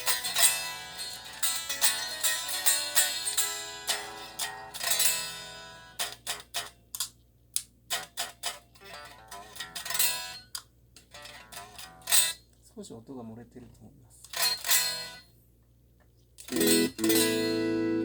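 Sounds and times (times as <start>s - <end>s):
electric guitar: 16.5s - 18.0s.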